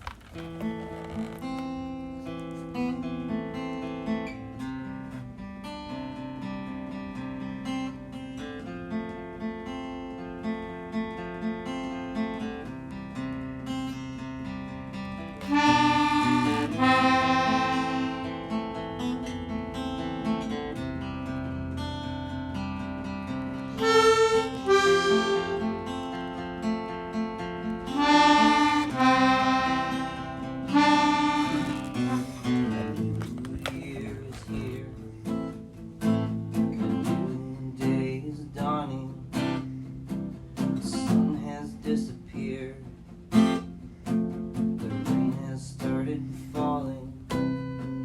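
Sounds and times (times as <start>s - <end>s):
acoustic guitar picking: 0.0s - 48.0s
harmonica phrases: 15.4s - 19.4s, 23.5s - 26.4s, 27.8s - 35.2s.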